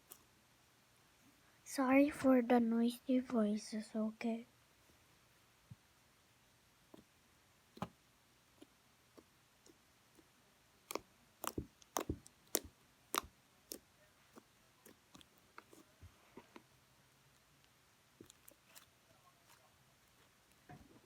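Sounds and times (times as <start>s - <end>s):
slime clicking and popping: 10.8s - 15.8s.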